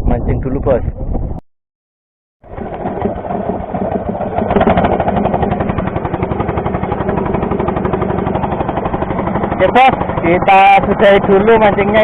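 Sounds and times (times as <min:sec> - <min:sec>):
boat engine running: 0:02.4 - 0:12.0.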